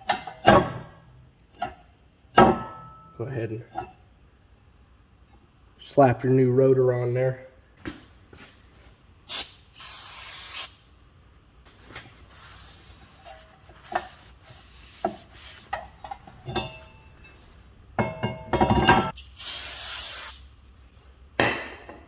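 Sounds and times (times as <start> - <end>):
aerosol spray hissing: 19.3 - 20.4.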